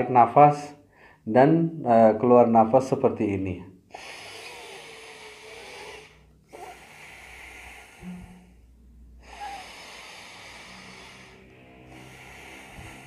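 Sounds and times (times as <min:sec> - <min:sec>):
man breathing deeply: 0:00.8 - 0:01.2, 0:03.9 - 0:13.0.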